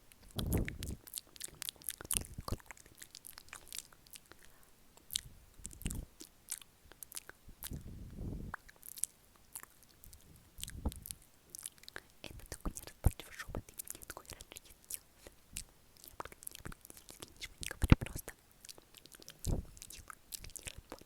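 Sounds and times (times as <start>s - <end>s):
wet lip and tongue clicks: 0.1s - 7.9s, 8.5s - 21.0s
low mouth puffs: 0.2s - 1.0s, 4.3s - 6.2s, 7.6s - 8.7s, 10.1s - 11.2s, 19.2s - 21.0s.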